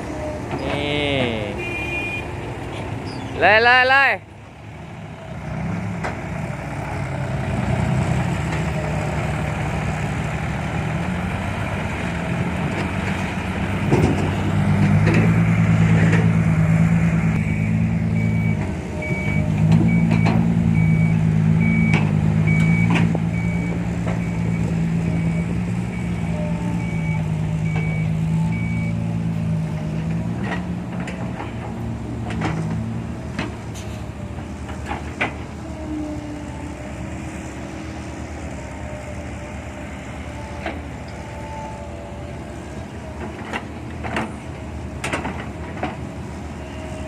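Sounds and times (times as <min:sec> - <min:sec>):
excavator diesel engine: 0:00.0 - 0:47.0
reversing beeper: 0:17.4 - 0:29.0.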